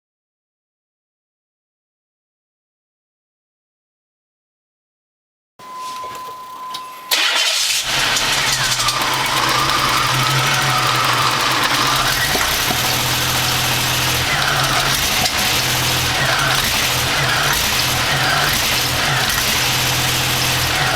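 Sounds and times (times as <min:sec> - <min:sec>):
steady beep: 0:05.6 - 0:07.2
car engine starting and idling: 0:06.0 - 0:20.9.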